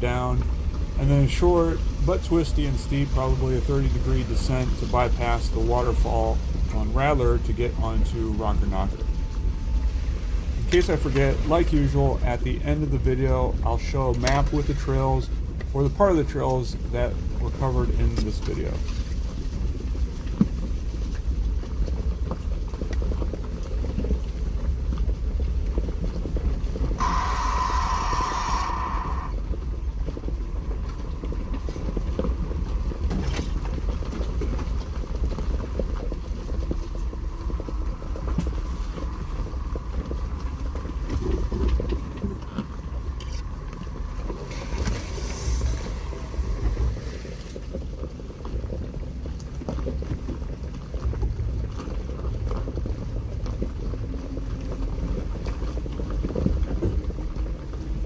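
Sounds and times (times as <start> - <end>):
low engine and drivetrain: 0.0 - 58.0
wind noise on microphone: 0.0 - 58.0
brief hiss: 27.0 - 29.4, 44.4 - 47.7
steady high tone: 27.0 - 29.5, 44.0 - 47.6.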